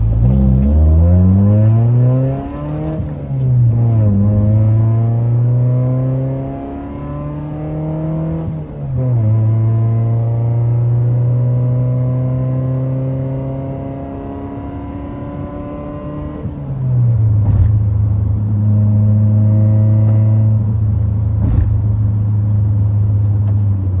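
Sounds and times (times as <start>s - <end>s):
exhaust cracks: 0.0s - 4.7s, 17.2s - 18.5s, 20.0s - 23.7s
car engine running loudly: 13.7s - 24.0s.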